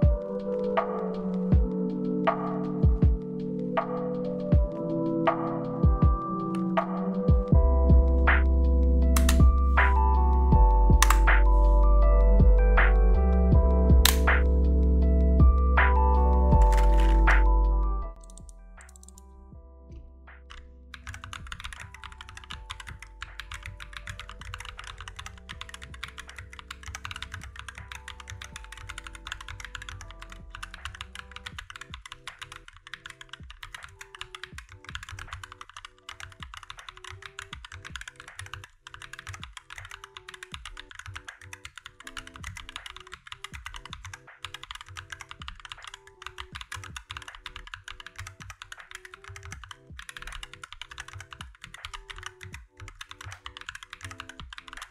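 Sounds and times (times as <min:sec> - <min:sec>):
soft background music: 0:00.0 - 0:54.9
mechanical keyboard typing: 0:06.4 - 0:07.4, 0:09.2 - 0:10.0, 0:10.9 - 0:11.4, 0:14.0 - 0:14.4, 0:15.9 - 0:19.2, 0:20.5 - 0:54.9.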